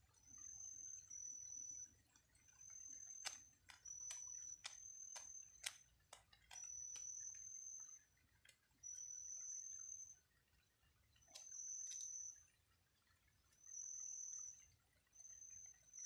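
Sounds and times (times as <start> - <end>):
faint high whine: 0.0 - 16.0
sharp ticks: 2.6 - 7.4.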